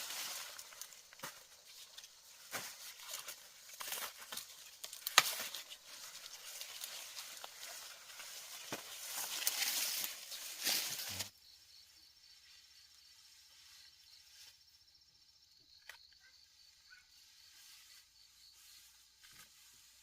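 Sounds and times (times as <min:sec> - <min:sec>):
dry corn plants rustling: 0:00.0 - 0:11.3, 0:17.4 - 0:20.0
sharp snaps of corn: 0:03.8 - 0:05.6.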